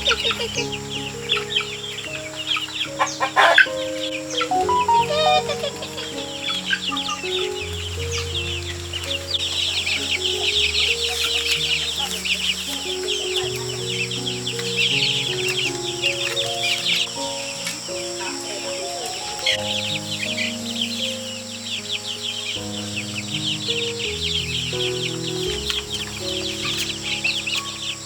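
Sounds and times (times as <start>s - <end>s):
chickens clucking: 0.0s - 3.8s, 4.4s - 7.7s
small birds chirping: 0.0s - 28.0s
soft music of held notes: 0.0s - 28.0s.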